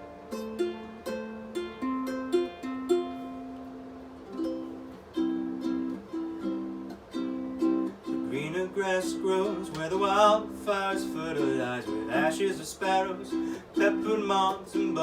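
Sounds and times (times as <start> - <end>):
plucked string instrument: 0.0 - 15.0.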